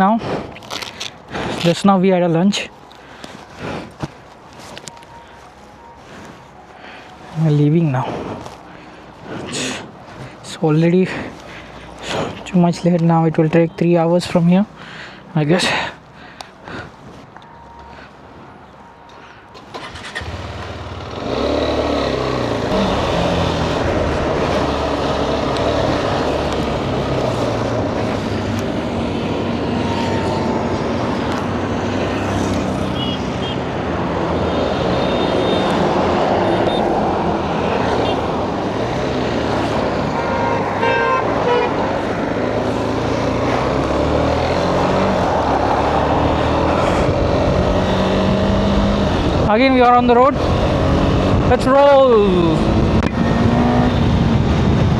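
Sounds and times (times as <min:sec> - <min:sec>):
motorcycle engine: 0:19.7 - 0:51.7
horn toot: 0:40.0 - 0:41.9.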